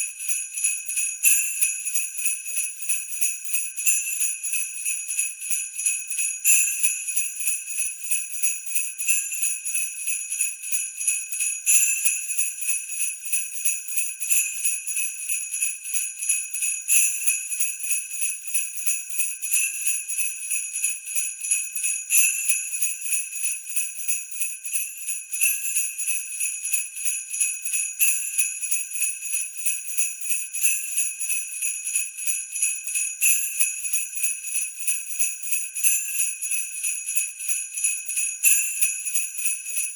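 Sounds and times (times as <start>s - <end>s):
sleigh bells jingling: 10.4s - 39.9s.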